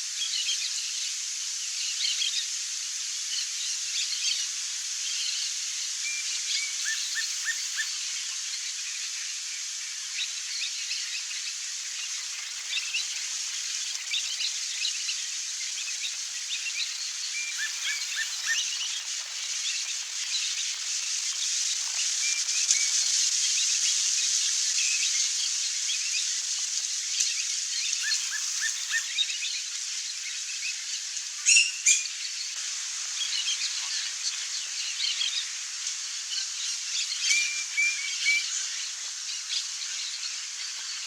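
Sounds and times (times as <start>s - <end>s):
steady high hiss: 0.0s - 41.0s
bird chirps: 15.7s - 21.4s.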